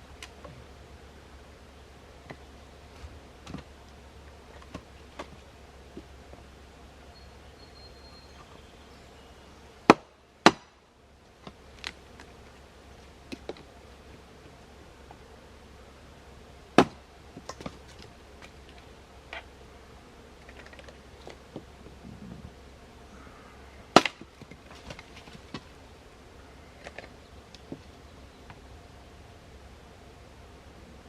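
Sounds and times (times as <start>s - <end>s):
blade chopping wood: 9.9s - 10.8s, 16.8s - 17.8s, 23.9s - 25.7s.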